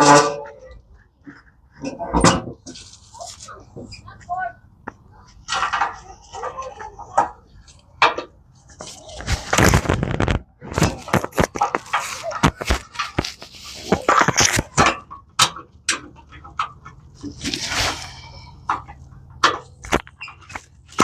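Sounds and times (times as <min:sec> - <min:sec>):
metal scrape: 0:17.3 - 0:18.8.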